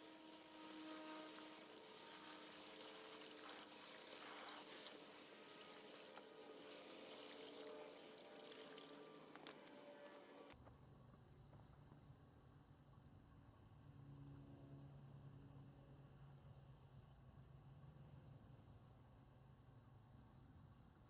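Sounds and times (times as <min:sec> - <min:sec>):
water running from hose: 0:00.0 - 0:09.7.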